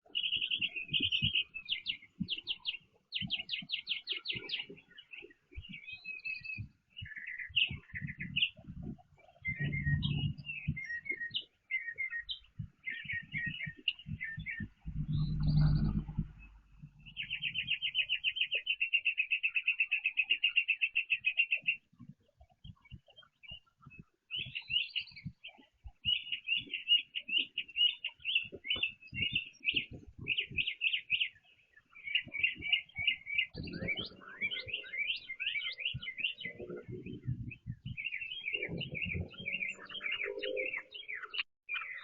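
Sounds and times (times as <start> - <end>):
songbirds chirping: 0.0 - 42.0
low thumps: 8.6 - 10.8, 13.5 - 17.7
heavy low rumbles: 9.5 - 10.7, 14.4 - 17.6.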